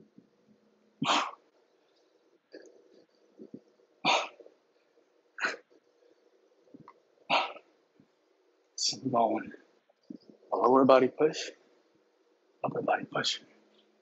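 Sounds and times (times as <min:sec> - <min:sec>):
sharp forceful exhalations: 0:01.0 - 0:01.4.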